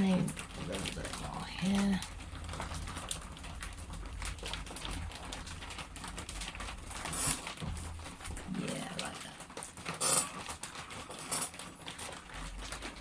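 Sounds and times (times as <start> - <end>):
potter's wheel humming: 0.0 - 10.3.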